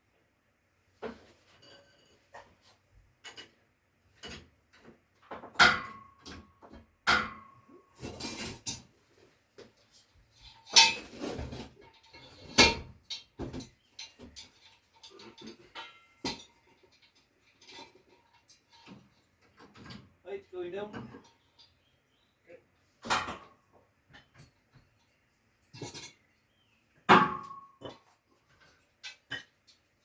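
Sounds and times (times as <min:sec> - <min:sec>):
metal clanks and knocks: 0:01.0 - 0:08.9, 0:10.4 - 0:20.2, 0:20.8 - 0:21.8, 0:23.0 - 0:24.9, 0:27.0 - 0:30.0
metal scrape: 0:10.4 - 0:12.8.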